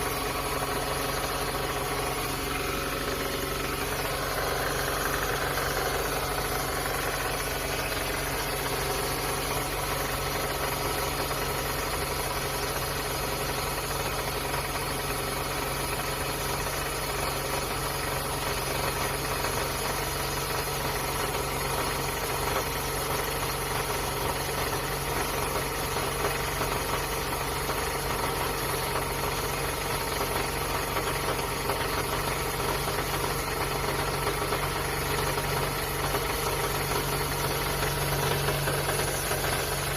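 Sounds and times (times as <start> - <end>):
engine running: 0.0 - 39.9.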